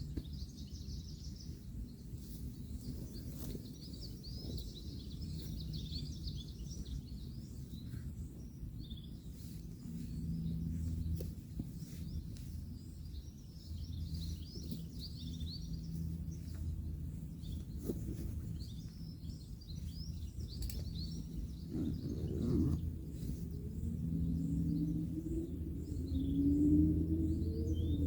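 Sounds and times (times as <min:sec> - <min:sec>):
distant road traffic hum: 0:00.0 - 0:28.0
small birds chirping: 0:00.0 - 0:28.0
faint clicks: 0:20.6 - 0:20.9.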